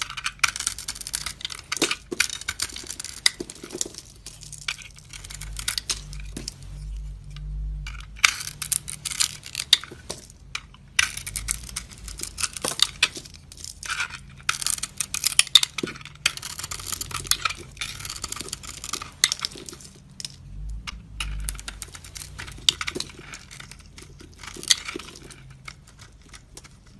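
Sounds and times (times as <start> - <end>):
knife scraping dry soap: 13.8 - 19.7, 21.2 - 26.9.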